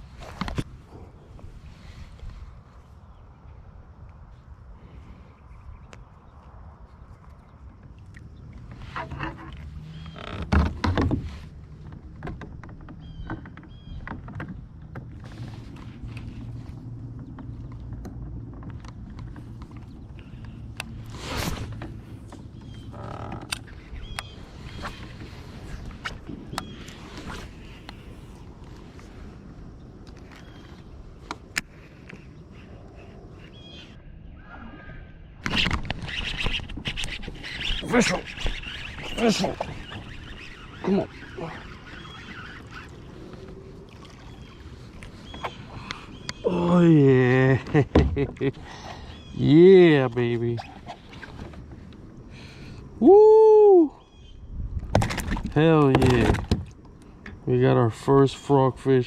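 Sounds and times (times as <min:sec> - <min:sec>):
open-water ambience: 0:00.0 - 0:59.0
faint bird chirps: 0:36.1 - 0:47.0.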